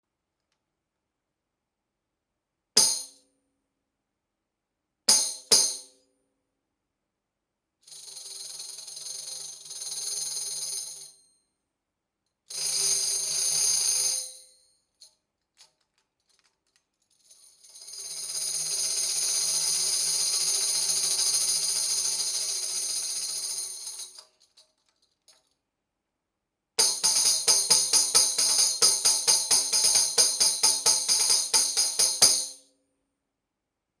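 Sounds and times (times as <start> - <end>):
tambourine jingles: 26.8 - 32.7.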